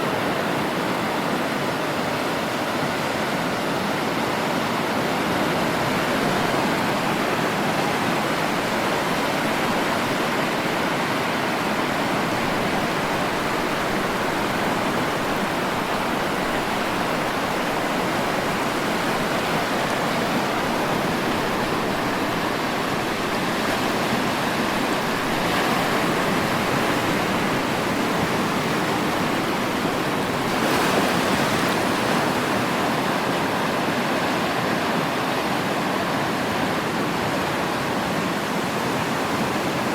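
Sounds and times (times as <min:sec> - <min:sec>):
sea surf washing on shore: 0:00.0 - 0:39.9
wave breaking: 0:05.1 - 0:33.3.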